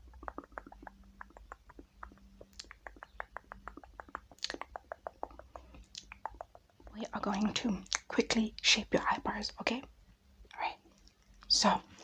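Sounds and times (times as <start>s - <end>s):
sponge tapping on microphone: 0.0s - 7.0s.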